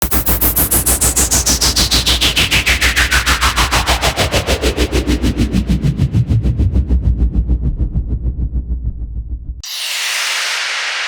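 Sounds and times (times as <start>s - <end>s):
pulsing low bass: 0.0s - 9.6s
falling noise sweep: 9.6s - 11.0s.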